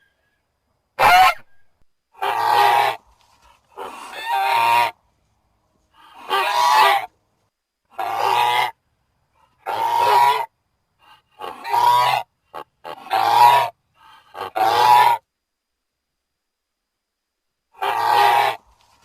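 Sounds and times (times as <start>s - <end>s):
harsh bird-like creature calls: 17.8s - 18.6s.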